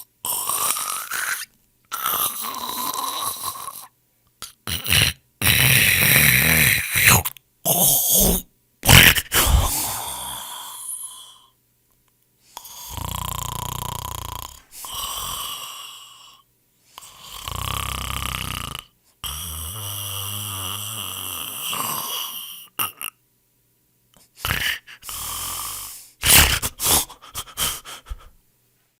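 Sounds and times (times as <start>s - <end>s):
people snoring: 0.0s - 3.9s, 4.7s - 11.4s, 12.6s - 16.4s, 17.0s - 23.0s, 24.4s - 26.7s
short snorts: 0.0s - 10.6s, 24.2s - 28.4s.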